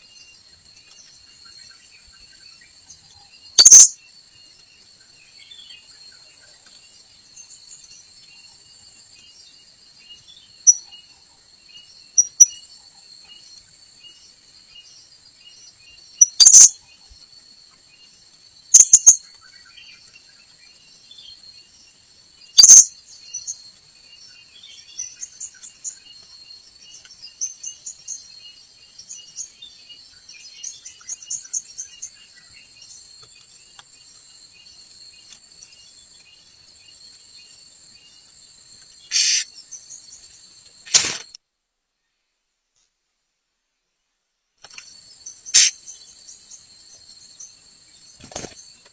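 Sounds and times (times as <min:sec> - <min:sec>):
insects droning: 0:00.0 - 0:41.4, 0:44.6 - 0:48.9
shrill parrot calls: 0:03.6 - 0:03.9, 0:16.3 - 0:16.7, 0:18.8 - 0:19.2, 0:22.6 - 0:22.9, 0:39.1 - 0:39.5, 0:45.5 - 0:45.8
soft quick chirps: 0:03.6 - 0:03.9, 0:18.8 - 0:19.2, 0:22.6 - 0:22.9, 0:39.1 - 0:39.5, 0:40.9 - 0:41.3, 0:45.6 - 0:45.8.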